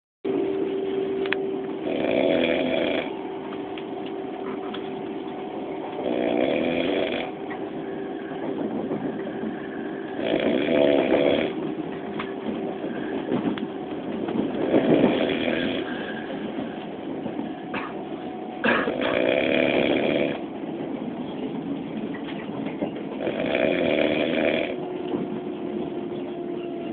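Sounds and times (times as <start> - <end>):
train carriage hum: 0.3 - 26.9
man snoring: 1.8 - 3.2, 6.0 - 7.4, 10.2 - 11.6, 14.6 - 16.0, 18.9 - 20.4, 23.2 - 24.8.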